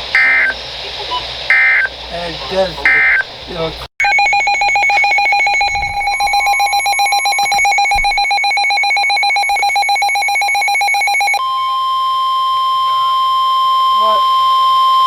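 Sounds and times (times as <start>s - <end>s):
steady single-pitch alarm tone: 0.1s - 0.6s, 1.5s - 1.9s, 2.9s - 3.3s, 4.0s - 15.0s
rapid warbling electronic beep: 2.8s - 3.2s, 4.0s - 11.4s.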